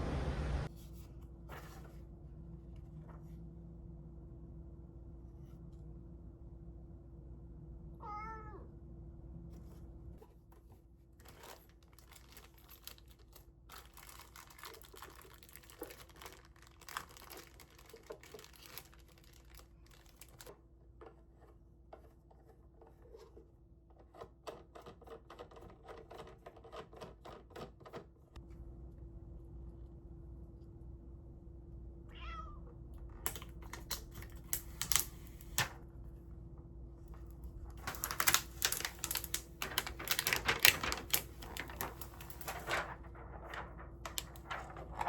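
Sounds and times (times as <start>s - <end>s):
cat meowing: 8.0s - 8.7s, 32.1s - 32.8s
faint steady hum: 28.4s - 45.0s
rapid clicking and rattling: 37.8s - 45.0s.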